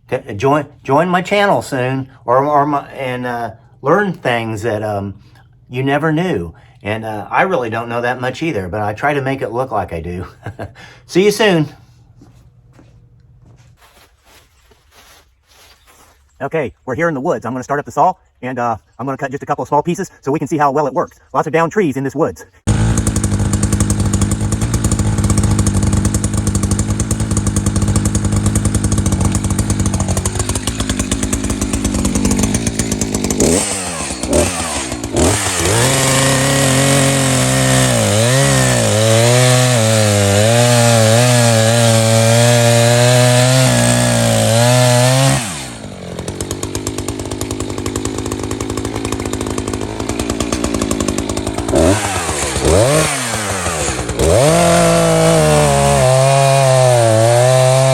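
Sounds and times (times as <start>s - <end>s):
chainsaw cutting branch: 22.7s - 57.9s.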